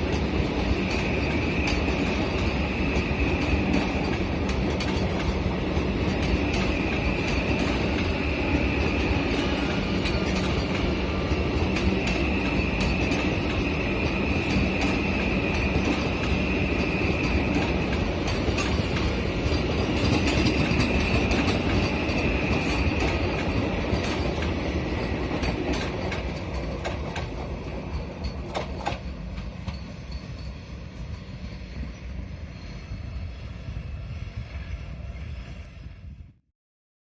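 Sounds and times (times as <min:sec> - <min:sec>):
wheels clicking over rail joints: 0:00.0 - 0:31.9
train rumbling on rails: 0:00.0 - 0:36.5.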